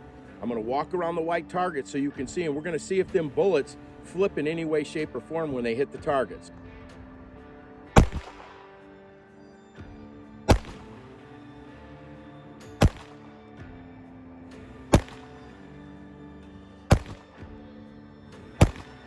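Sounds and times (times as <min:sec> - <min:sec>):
pistol shots: 0:08.0 - 0:08.7, 0:10.5 - 0:11.0, 0:12.8 - 0:13.4, 0:14.9 - 0:15.5, 0:16.9 - 0:17.3, 0:18.6 - 0:19.0.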